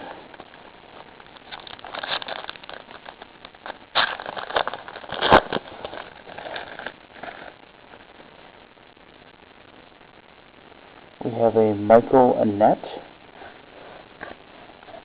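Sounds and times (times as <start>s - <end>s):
foil wrapper crinkling and tearing: 1.3s - 7.6s.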